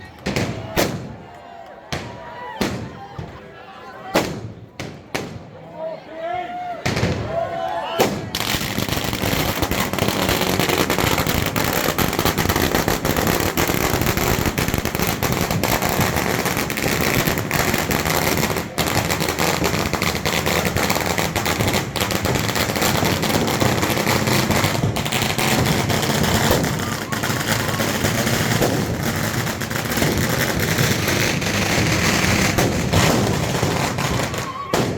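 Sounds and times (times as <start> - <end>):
firecrackers crackling: 0.0 - 1.3, 1.9 - 3.1, 4.2 - 5.6, 6.8 - 7.4, 8.0 - 34.9.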